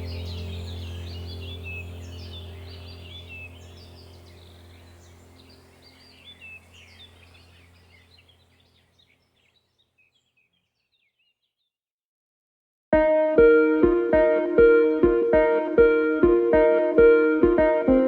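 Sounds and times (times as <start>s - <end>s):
low steady hum: 0.0s - 9.1s
small birds chirping: 0.0s - 11.8s.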